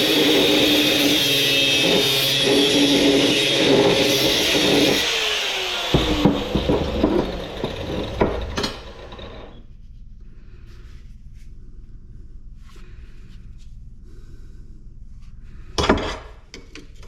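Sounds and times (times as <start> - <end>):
power tool whining: 0.0 - 9.6
sharp knocks and clanks: 5.8 - 9.5, 15.8 - 17.0.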